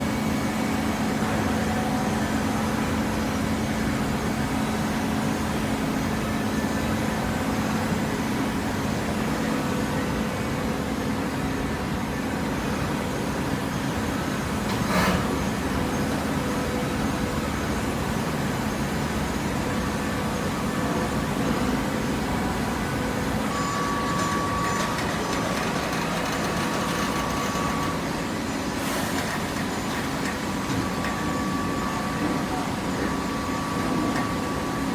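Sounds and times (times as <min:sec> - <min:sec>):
hydraulic pump motor humming: 0:20.2 - 0:34.9.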